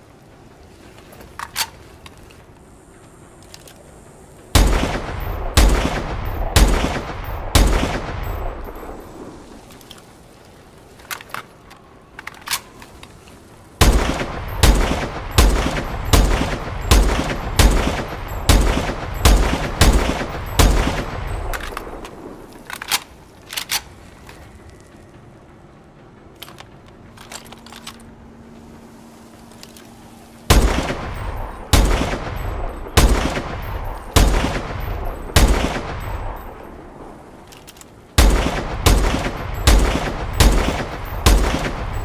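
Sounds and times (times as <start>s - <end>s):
rifle shots echoing: 4.6s - 9.1s, 13.8s - 23.0s, 30.5s - 37.2s, 38.2s - 42.0s.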